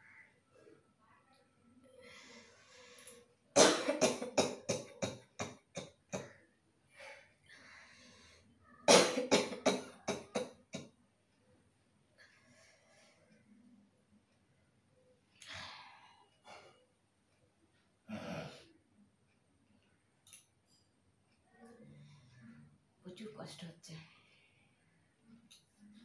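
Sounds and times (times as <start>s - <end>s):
person coughing: 3.6s - 6.3s, 8.9s - 10.5s.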